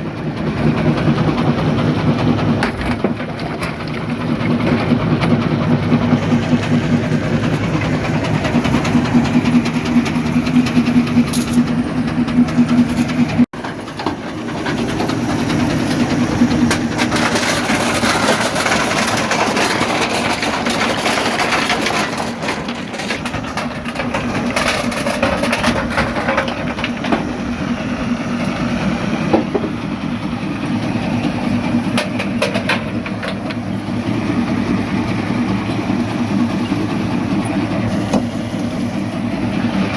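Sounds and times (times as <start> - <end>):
jaw crusher machine drone: 0.0 - 39.9
rock grinding and clattering: 12.5 - 27.8.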